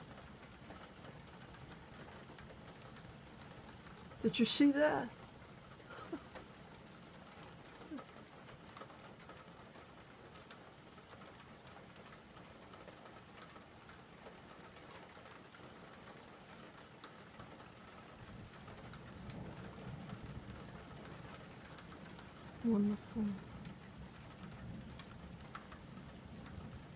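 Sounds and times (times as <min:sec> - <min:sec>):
faint steady rain: 0:00.0 - 0:26.9
distant thunder rumble: 0:18.2 - 0:26.9
single raindrop ticks: 0:23.6 - 0:26.8.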